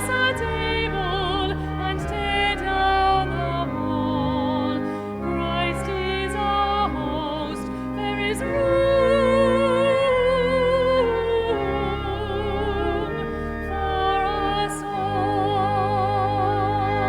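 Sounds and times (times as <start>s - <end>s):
classical singing with vibrato: 0.0s - 17.0s
sustained instrumental accompaniment: 0.0s - 17.0s.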